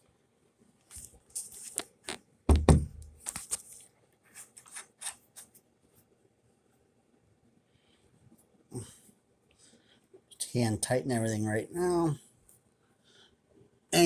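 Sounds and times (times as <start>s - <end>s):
door hardware clicks and knocks: 2.5s - 3.2s
heavy thump: 2.5s - 3.2s.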